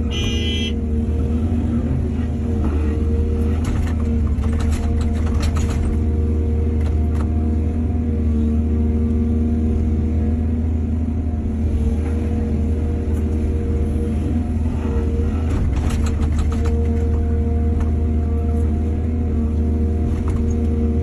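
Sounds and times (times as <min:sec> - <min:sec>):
excavator diesel engine running: 0:00.0 - 0:21.0
clanks and rattles: 0:03.5 - 0:06.2, 0:15.4 - 0:17.9.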